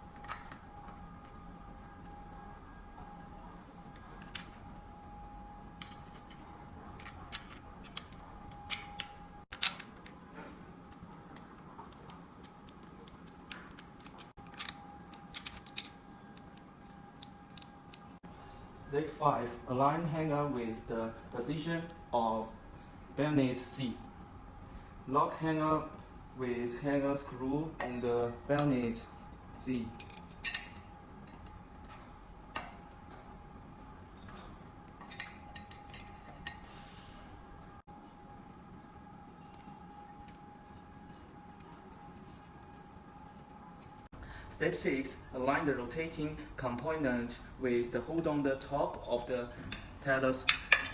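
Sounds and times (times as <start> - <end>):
faint steady hum: 0.0 - 50.9
small parts clicking and tapping: 5.8 - 10.2, 10.9 - 18.1, 28.6 - 32.7, 34.2 - 36.7
small metal parts clicking: 29.7 - 32.0, 34.2 - 36.7.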